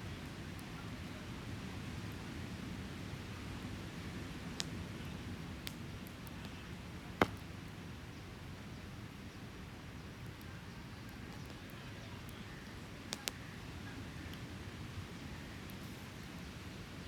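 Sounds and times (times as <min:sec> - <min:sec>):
campfire crackling and popping: 0:00.1 - 0:17.0.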